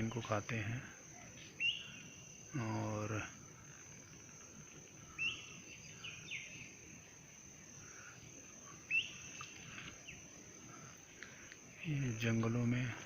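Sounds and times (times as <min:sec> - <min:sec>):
bird chirps: 0:01.0 - 0:02.9, 0:03.6 - 0:07.2, 0:07.8 - 0:12.2.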